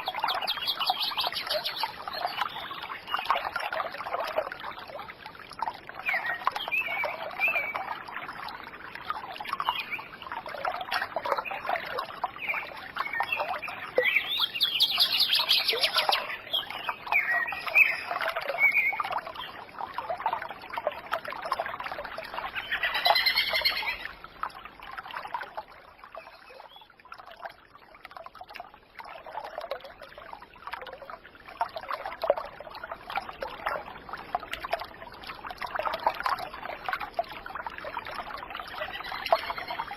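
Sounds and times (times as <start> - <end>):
water trickling: 0.0 - 39.9
birds chirping: 0.1 - 3.3, 12.4 - 19.5, 22.5 - 24.1.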